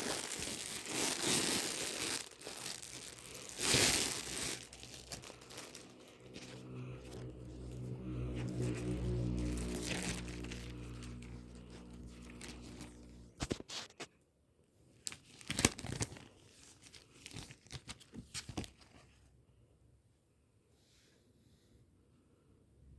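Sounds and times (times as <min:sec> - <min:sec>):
plastic packaging crinkling: 0:00.0 - 0:13.9, 0:15.0 - 0:19.0
low steady drone: 0:02.6 - 0:13.4.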